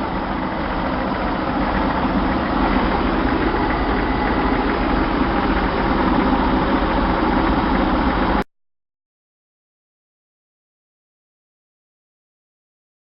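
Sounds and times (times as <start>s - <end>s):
car engine idling: 0.0s - 8.4s.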